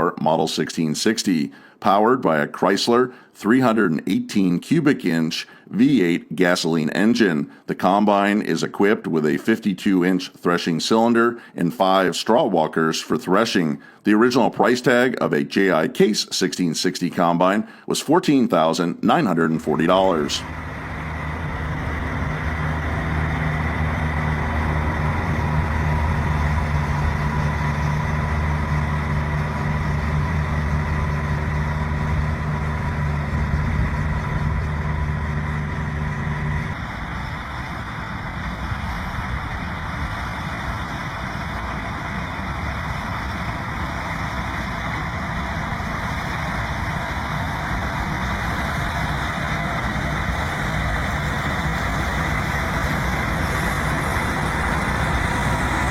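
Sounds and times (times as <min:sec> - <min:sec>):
combine harvester engine humming: 0:00.0 - 0:55.9
broad rumble: 0:19.3 - 0:55.9.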